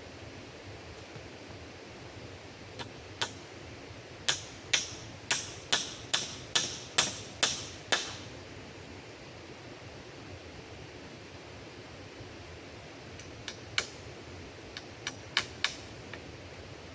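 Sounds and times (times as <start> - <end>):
sharp knocks: 4.3 - 8.3.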